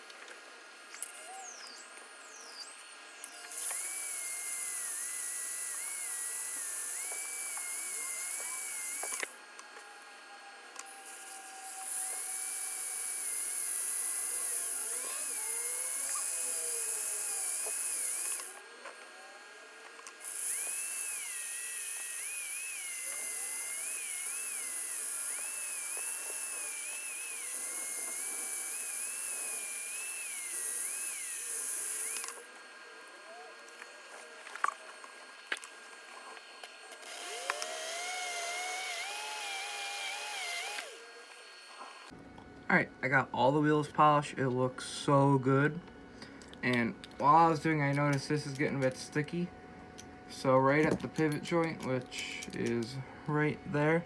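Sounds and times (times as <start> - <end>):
electric motor whirring: 0.0 - 42.2.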